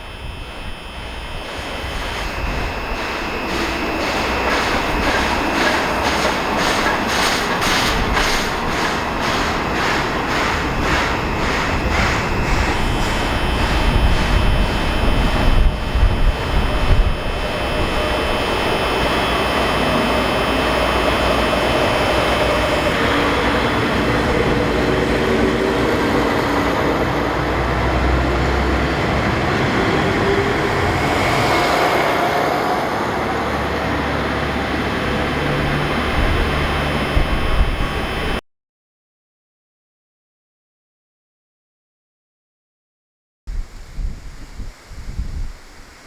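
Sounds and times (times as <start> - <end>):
wind buffeting microphone: 0.0 - 27.9, 34.5 - 38.4, 43.5 - 46.0
steam train running: 0.0 - 38.4.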